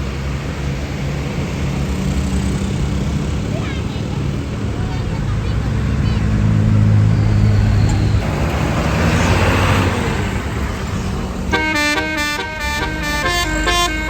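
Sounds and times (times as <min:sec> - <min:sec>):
road noise: 0:00.0 - 0:14.0
vehicle engine rumble: 0:00.0 - 0:14.0
bus horn playing melody: 0:11.4 - 0:14.0.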